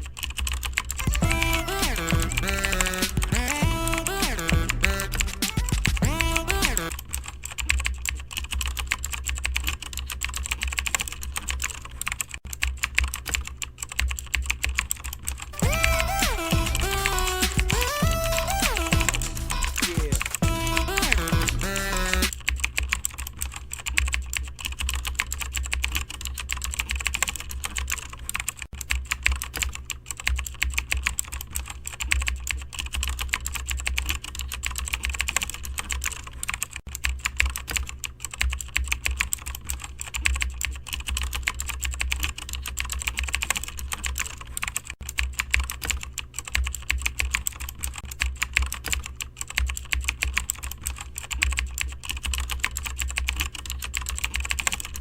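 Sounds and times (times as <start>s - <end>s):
typing on keyboard: 0.0s - 55.0s
steady low hum: 1.1s - 7.6s, 15.5s - 23.9s.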